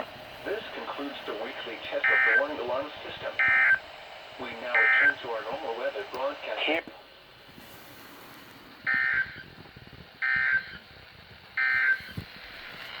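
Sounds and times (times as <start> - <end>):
faint radio hiss: 0.0 - 8.7
warbling data bursts: 1.9 - 6.0.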